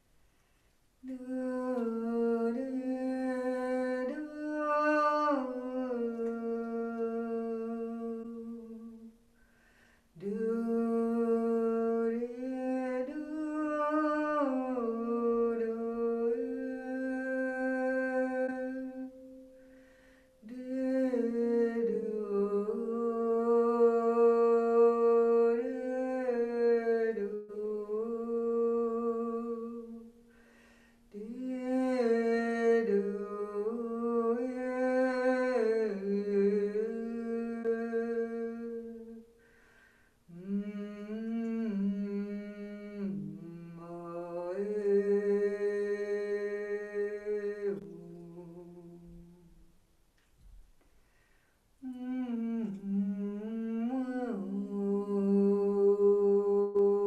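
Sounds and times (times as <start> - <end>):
woman humming: 51.8 - 57.0.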